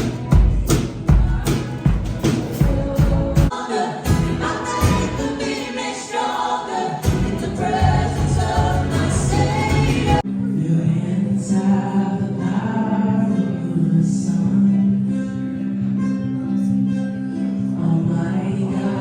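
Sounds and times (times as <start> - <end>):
music with singing: 0.0 - 19.0.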